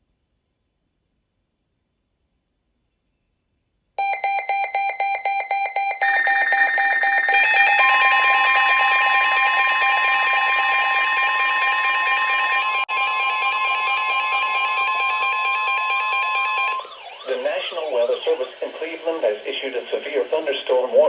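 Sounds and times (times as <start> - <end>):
rapid pulsed beeping: 4.0 - 18.7
steady electronic tone: 4.0 - 18.8.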